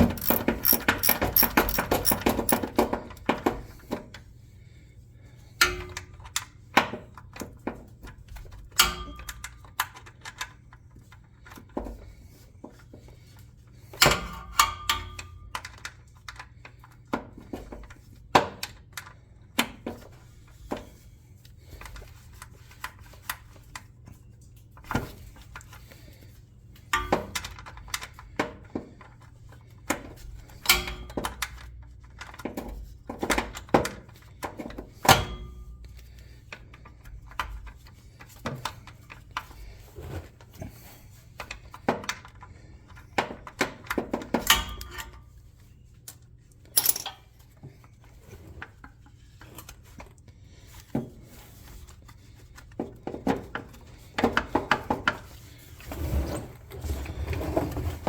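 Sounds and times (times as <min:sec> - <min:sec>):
hand tools clicking and clanking: 0:00.0 - 0:02.8, 0:46.8 - 0:47.3.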